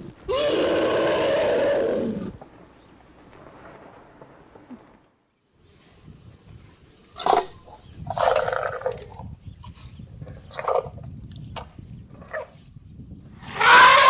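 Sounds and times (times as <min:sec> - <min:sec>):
elephants calling: 0:00.0 - 0:02.4, 0:13.5 - 0:14.0.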